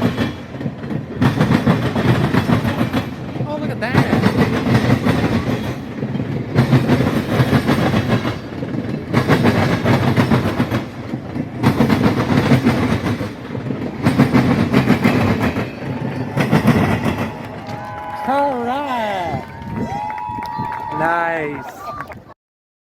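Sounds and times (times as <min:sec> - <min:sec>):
train wheels clattering over rail joints: 0:00.0 - 0:18.1.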